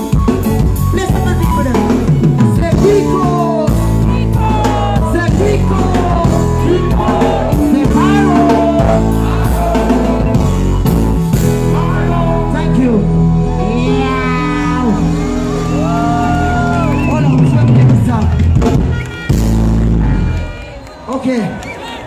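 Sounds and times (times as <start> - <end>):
dancehall music over loudspeakers: 0.9 - 10.7.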